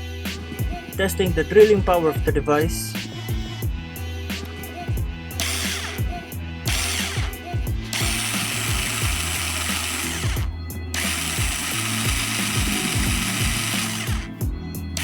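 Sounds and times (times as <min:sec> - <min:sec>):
cordless drill drilling into plywood: 0:05.4 - 0:06.1, 0:06.7 - 0:14.3.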